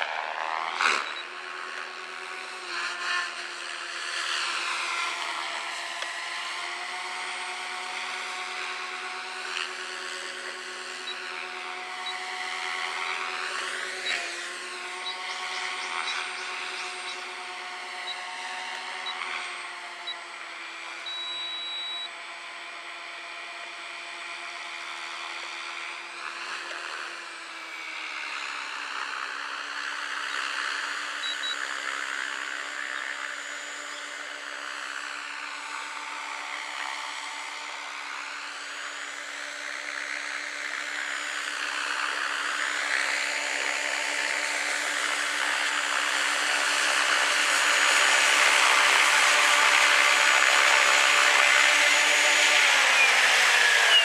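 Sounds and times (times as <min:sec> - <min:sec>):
rc helicopter rotor whine: 0:00.0 - 0:54.0
short high beeps: 0:21.1 - 0:22.1.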